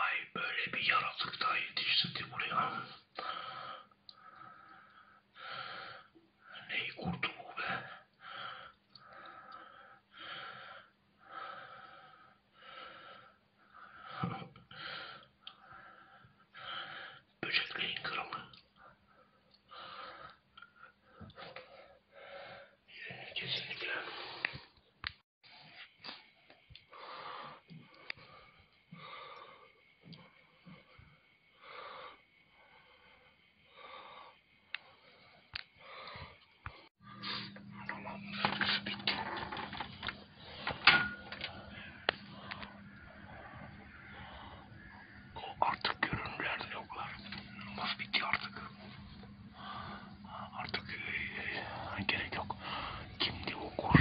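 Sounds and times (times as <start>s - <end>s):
person breathing heavily and wheezily: 2.8s - 17.4s, 18.1s - 24.8s, 25.4s - 54.0s
person breathing wheezily: 31.6s - 54.0s.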